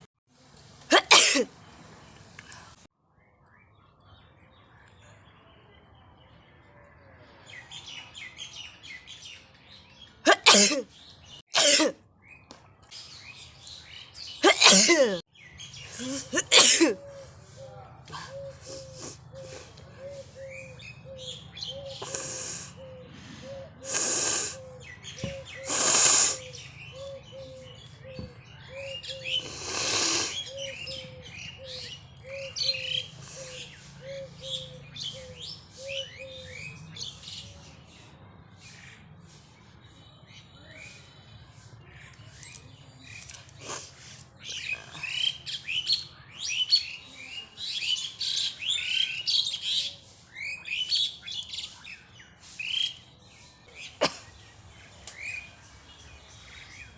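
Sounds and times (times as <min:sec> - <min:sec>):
birds chirping: 0:00.9 - 0:56.9
air blasts through nose: 0:23.8 - 0:24.6, 0:25.6 - 0:26.5, 0:29.4 - 0:30.5.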